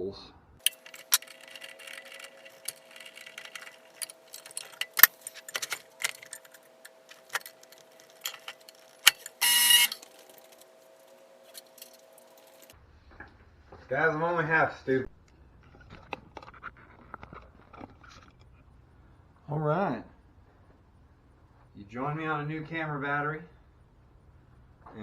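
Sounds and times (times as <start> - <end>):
faint steady hum: 0.0 - 25.0
metallic clicks of tools handled: 0.6 - 10.7.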